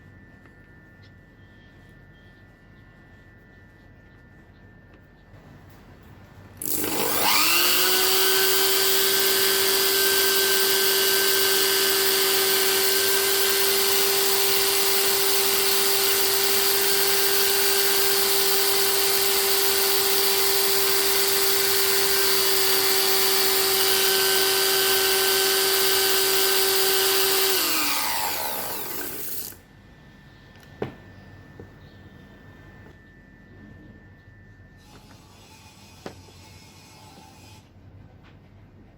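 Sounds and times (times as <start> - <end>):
small electric motor whining: 6.6 - 29.6.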